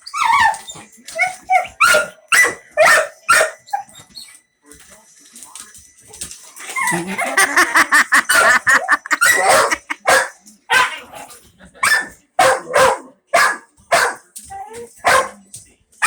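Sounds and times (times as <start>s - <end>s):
dog barking: 1.7s - 3.7s, 7.6s - 11.0s, 11.8s - 14.2s, 15.0s - 15.4s.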